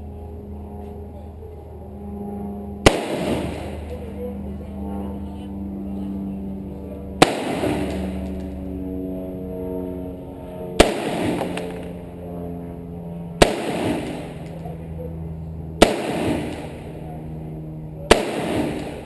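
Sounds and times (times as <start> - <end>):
gunshots with echo: 2.8 - 3.9, 7.2 - 8.3, 10.8 - 11.9, 13.4 - 14.5, 15.8 - 17.0, 18.1 - 19.0.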